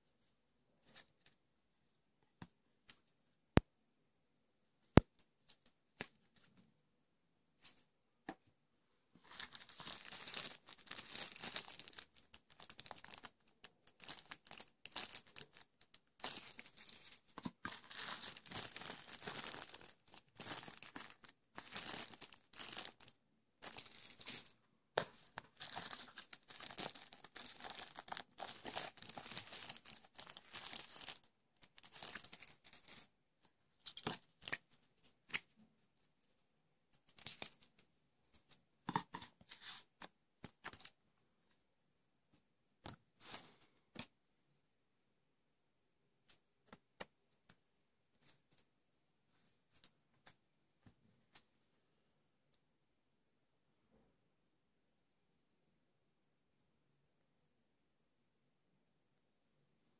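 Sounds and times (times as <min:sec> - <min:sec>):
packaging torn and crinkled: 0:09.3 - 0:24.4, 0:25.6 - 0:33.0.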